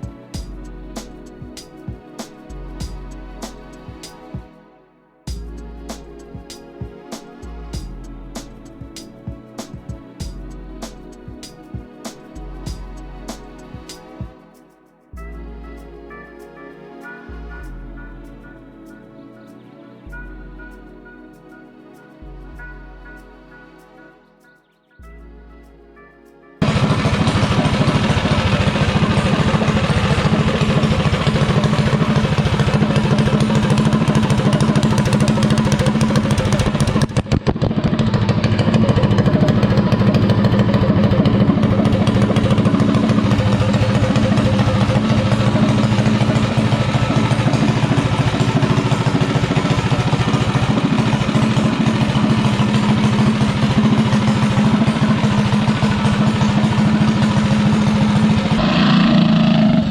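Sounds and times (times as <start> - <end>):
single-cylinder engine running: 26.6 - 59.9.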